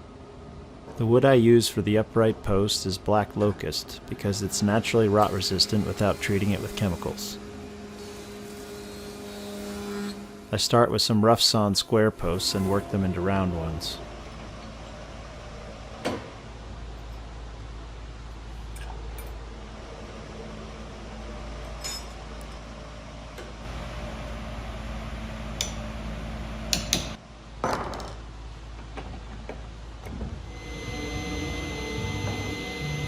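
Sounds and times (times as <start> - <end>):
steady low hum: 28.2 - 33.0.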